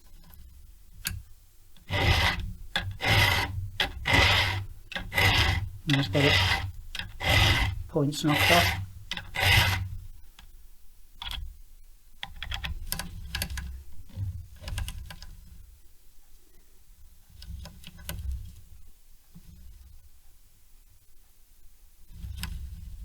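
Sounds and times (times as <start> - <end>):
file stroke on saw chain: 1.9 - 9.9.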